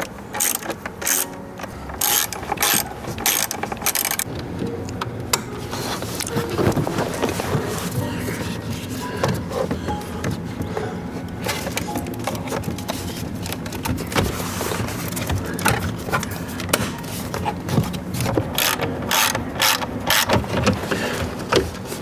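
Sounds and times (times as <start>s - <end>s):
ratchet wrench clicking: 0.0s - 4.3s, 18.5s - 20.3s.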